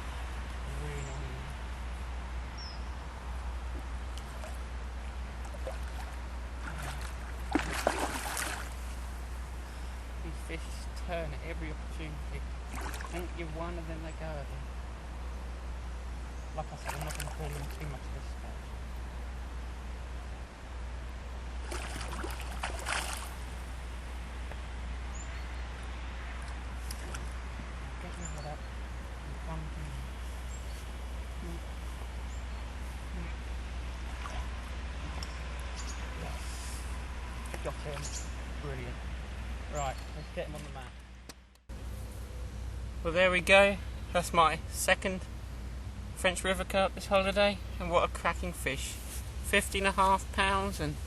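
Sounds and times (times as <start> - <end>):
low water and wind: 0.0 - 51.0
steady low hum: 0.0 - 51.0
fish splashing in water: 5.4 - 8.9, 12.7 - 13.3, 16.8 - 17.9, 21.6 - 23.5, 26.3 - 27.4, 34.0 - 35.8.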